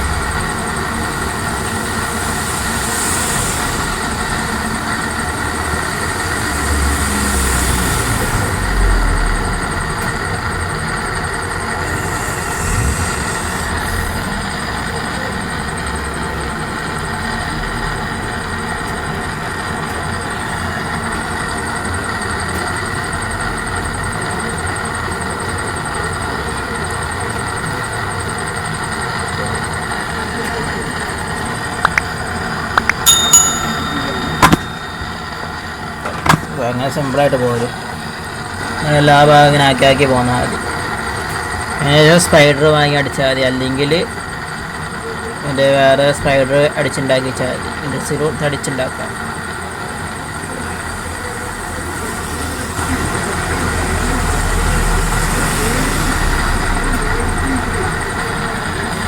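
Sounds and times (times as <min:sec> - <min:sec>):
gas torch flame hissing: 0:00.0 - 0:09.0, 0:11.2 - 0:15.7.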